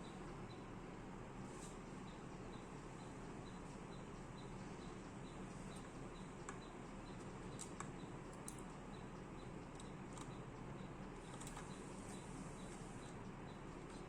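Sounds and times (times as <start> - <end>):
steady background noise: 0.0 - 14.0
faint high chirping: 2.1 - 8.2.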